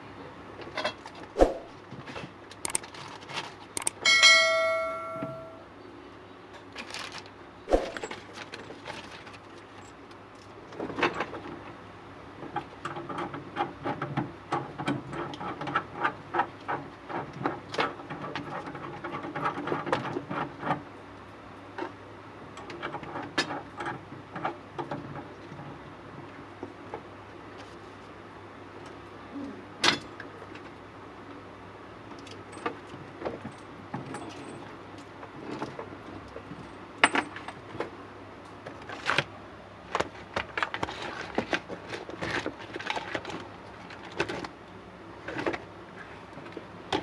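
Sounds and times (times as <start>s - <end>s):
metal object struck and ringing: 4.0s - 5.7s.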